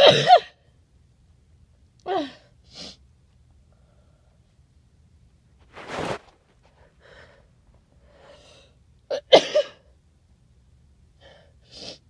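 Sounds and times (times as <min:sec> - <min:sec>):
person sneezing: 0:00.0 - 0:00.6
faint breaths: 0:03.6 - 0:04.6, 0:06.6 - 0:08.8.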